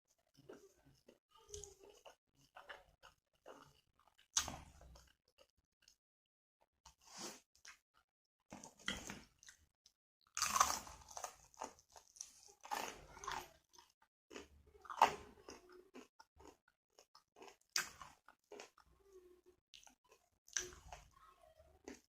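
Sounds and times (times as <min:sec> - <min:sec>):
person chewing crunchy food: 0:00.1 - 0:06.0, 0:10.3 - 0:19.0, 0:19.7 - 0:21.1.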